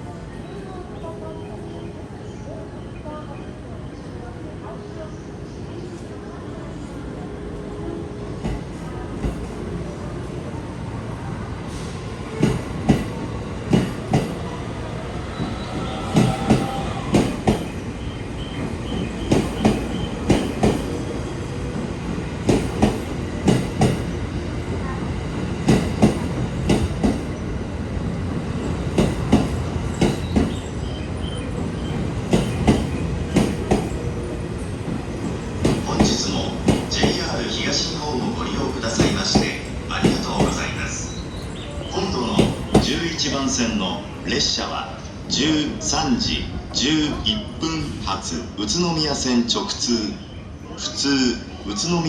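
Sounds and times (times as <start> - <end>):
train rumble: 0.0 - 51.9
train wheels clacking over rail joints: 12.4 - 14.5, 16.2 - 17.8, 18.9 - 21.0, 22.4 - 24.2, 25.6 - 27.4, 28.9 - 30.7, 32.2 - 34.1, 35.2 - 37.4, 38.9 - 40.6, 42.4 - 43.0.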